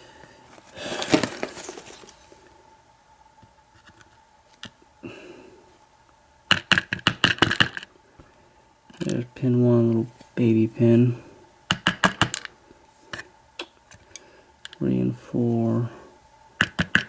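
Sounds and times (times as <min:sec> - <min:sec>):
metal parts rustling and scraping: 0:00.4 - 0:02.5.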